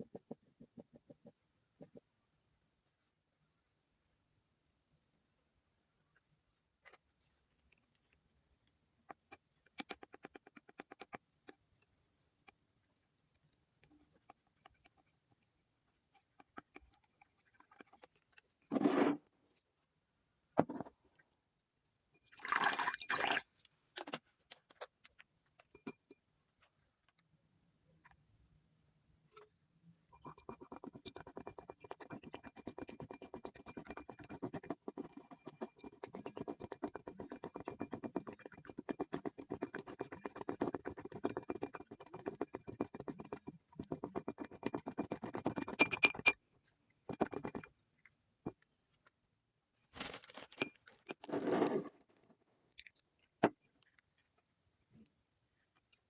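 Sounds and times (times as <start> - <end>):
slime stirred in a bowl: 9.0 - 19.3, 30.1 - 47.8, 50.0 - 52.0.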